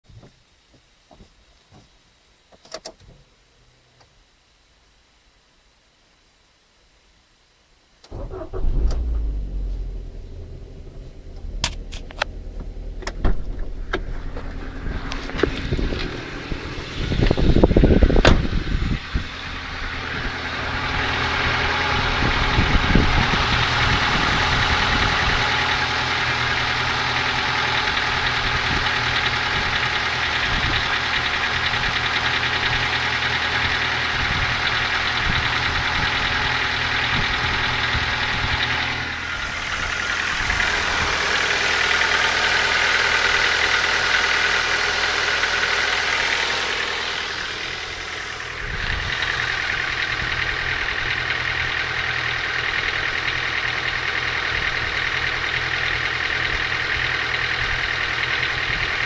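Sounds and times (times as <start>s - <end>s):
loud burst of noise: 8.1s - 18.7s
car engine idling with knock: 8.1s - 59.0s.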